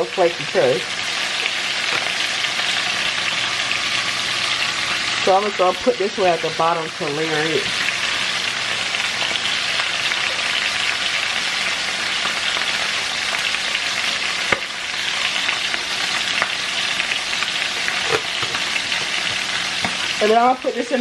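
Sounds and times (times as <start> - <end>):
chicken sizzling in oil: 0.0 - 21.0.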